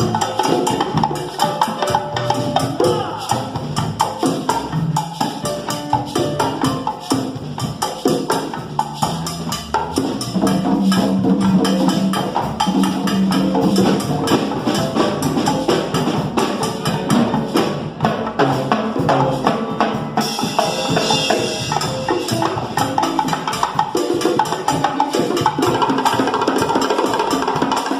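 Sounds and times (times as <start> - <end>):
hand percussion: 0.0 - 27.9
salsa music: 0.0 - 27.9.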